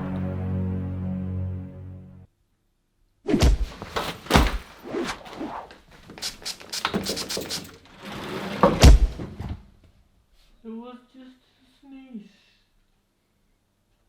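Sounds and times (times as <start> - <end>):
heavy thuds: 3.4 - 5.3
scuffling clatter: 3.6 - 9.6.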